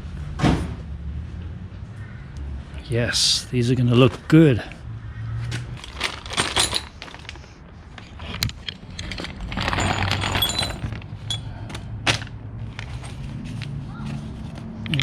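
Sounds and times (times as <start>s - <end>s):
packaging rustling: 5.8s - 11.1s
metal clicks and knocks: 8.0s - 12.3s.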